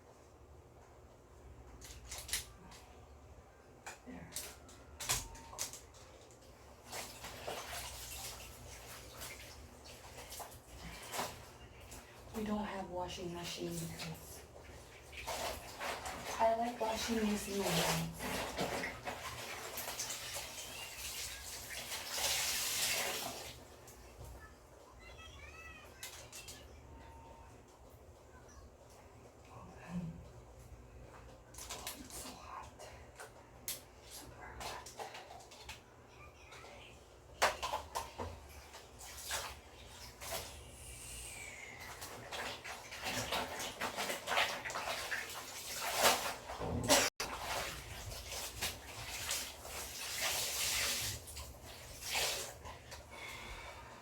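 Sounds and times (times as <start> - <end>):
wet clothes scrubbed in water: 6.5 - 24.2, 37.4 - 54.0.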